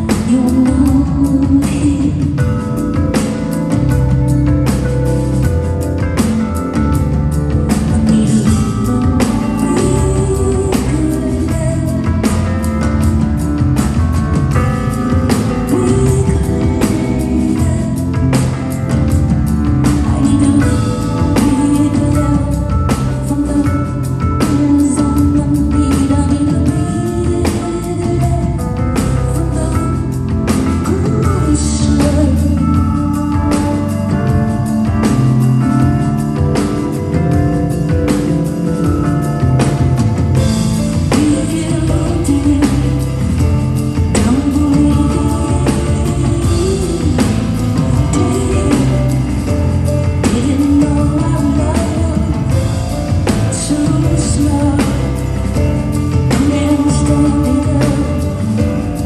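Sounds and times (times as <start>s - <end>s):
live rock band music: 0.0s - 59.0s
woman singing: 0.0s - 59.0s
drum strikes: 33.1s - 59.0s.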